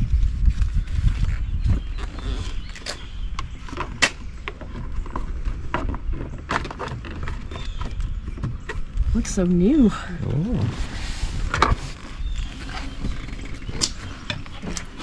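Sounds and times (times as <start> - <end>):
low rumble: 8.9 - 13.8.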